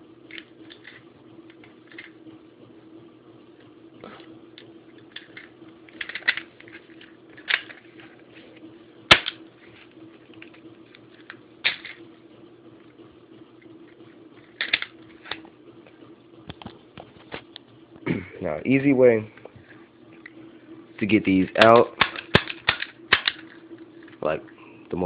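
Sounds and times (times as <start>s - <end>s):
small clicks and rattles: 4.6s - 8.1s.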